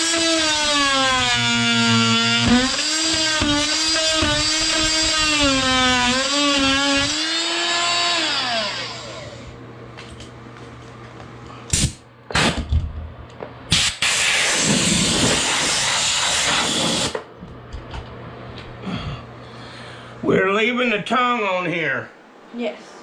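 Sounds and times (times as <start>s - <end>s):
power tool motor whining: 0.0s - 9.6s.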